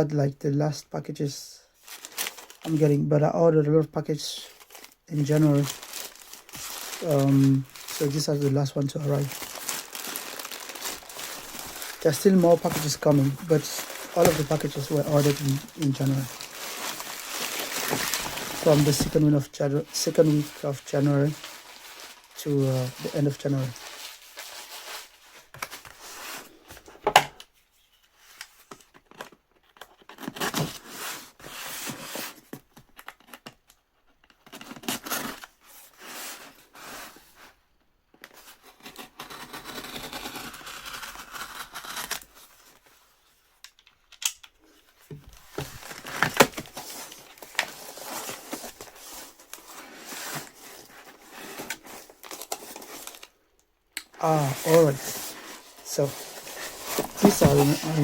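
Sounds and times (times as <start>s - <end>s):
packaging tearing and crinkling: 1.8s - 2.7s, 4.6s - 26.4s, 38.7s - 42.8s, 45.4s - 53.4s, 54.2s - 58.0s.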